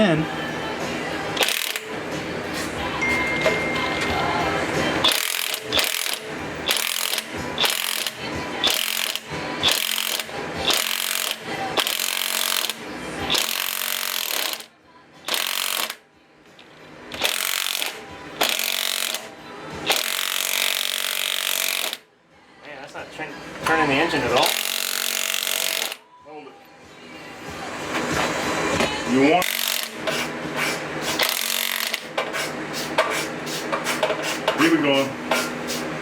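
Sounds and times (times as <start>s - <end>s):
ratchet wrench clicking: 1.4s - 1.9s, 5.0s - 14.7s, 15.3s - 16.0s, 17.2s - 19.3s, 19.9s - 22.0s, 24.4s - 26.0s, 29.4s - 30.2s, 31.2s - 32.1s.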